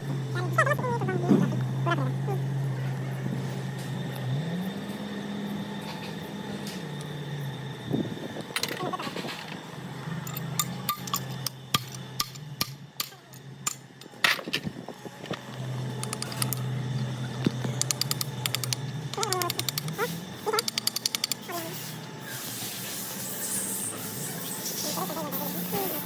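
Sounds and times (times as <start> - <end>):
steady low hum: 0.0 - 25.4
hand tools and metal parts clicking: 8.4 - 23.5
rattling runs of clicks: 10.2 - 21.5.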